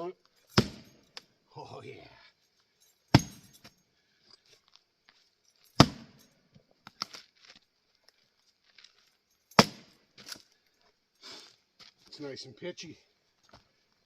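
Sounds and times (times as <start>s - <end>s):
axe striking wood: 0.5s - 1.0s, 3.1s - 3.5s, 5.8s - 6.2s, 9.5s - 9.9s.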